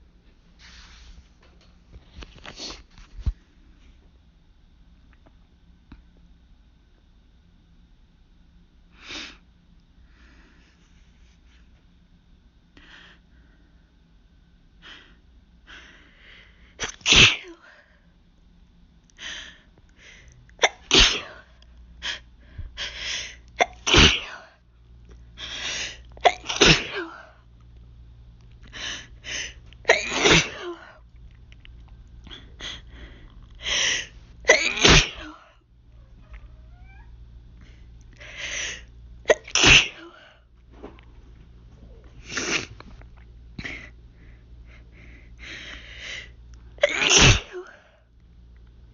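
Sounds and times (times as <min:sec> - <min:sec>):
woman sneezing: 0:16.8 - 0:17.6, 0:20.6 - 0:21.5, 0:23.6 - 0:24.5, 0:26.2 - 0:27.2, 0:29.9 - 0:30.9, 0:34.5 - 0:35.4, 0:39.3 - 0:40.3, 0:46.8 - 0:47.9.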